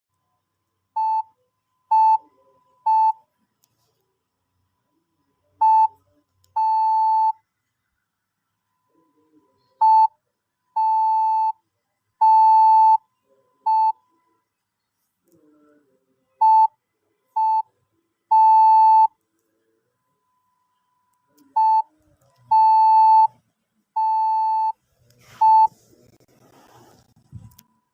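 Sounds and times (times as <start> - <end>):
morse code beeps: 18.3 - 19.1, 22.5 - 23.3, 24.0 - 24.8, 25.4 - 25.7.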